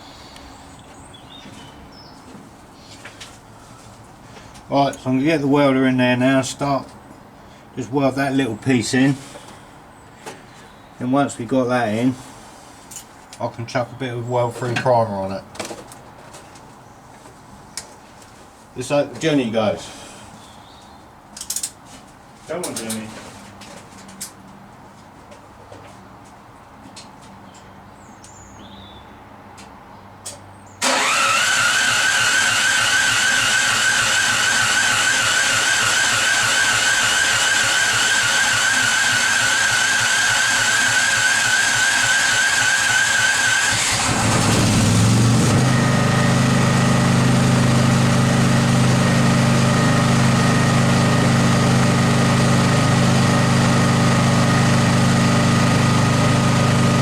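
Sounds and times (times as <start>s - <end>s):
motor whining: 30.8s - 46.9s.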